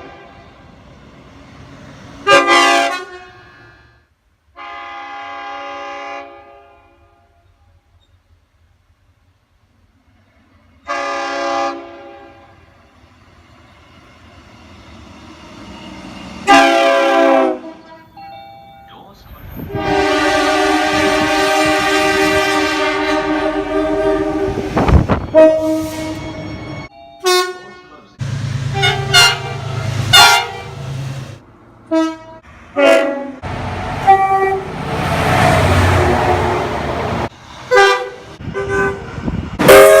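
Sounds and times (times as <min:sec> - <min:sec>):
train horns blasting: 0:00.0 - 0:00.6, 0:02.2 - 0:07.6, 0:10.8 - 0:12.7, 0:16.3 - 0:18.2, 0:19.6 - 0:31.1, 0:31.9 - 0:40.0
passing train rumble: 0:00.0 - 0:40.0.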